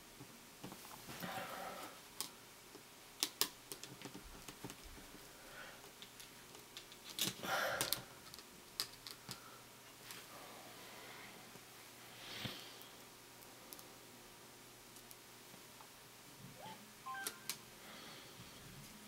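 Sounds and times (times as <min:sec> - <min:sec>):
small parts clicking and tapping: 0:05.8 - 0:09.4.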